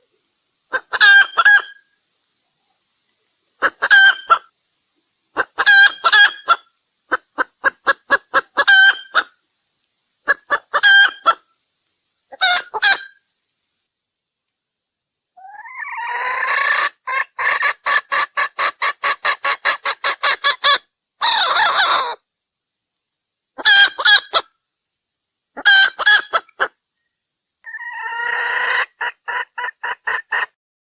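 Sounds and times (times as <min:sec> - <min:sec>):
junglefowl hen calling and clucking: 0:00.0 - 0:04.6, 0:05.3 - 0:09.4, 0:10.2 - 0:11.6, 0:12.3 - 0:13.3, 0:15.4 - 0:22.3, 0:23.5 - 0:24.6, 0:25.5 - 0:30.6.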